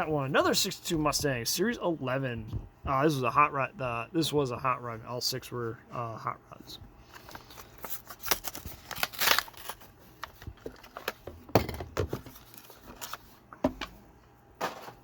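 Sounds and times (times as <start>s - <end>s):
packaging being handled: 7.1s - 11.3s, 12.0s - 13.4s.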